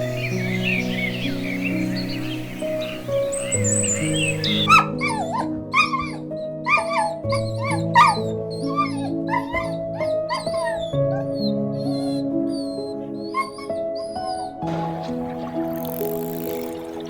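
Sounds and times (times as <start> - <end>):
slow background music: 0.0 - 17.0
dog crying: 4.0 - 14.7.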